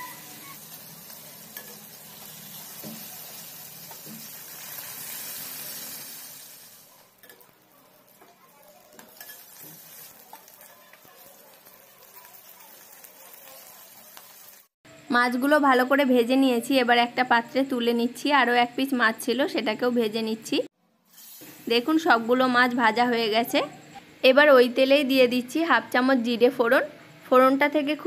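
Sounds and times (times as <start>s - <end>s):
fish sizzling in hot oil: 0.0s - 14.8s, 21.1s - 21.9s.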